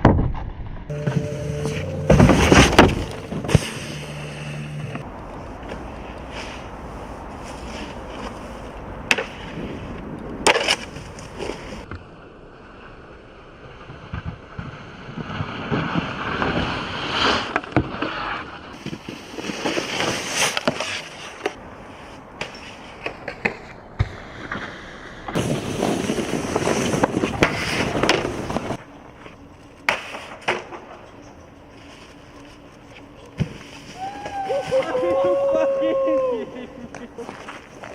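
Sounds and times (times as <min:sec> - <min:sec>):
snowboards scraping over snow: 0:00.9 - 0:11.9, 0:14.1 - 0:28.8, 0:31.8 - 0:37.9
snowboard impact clacks: 0:22.4 - 0:28.8.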